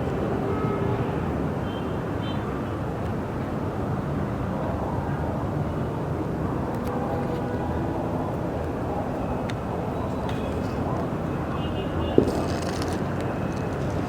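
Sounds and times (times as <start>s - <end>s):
distant traffic rumble: 0.0s - 14.0s.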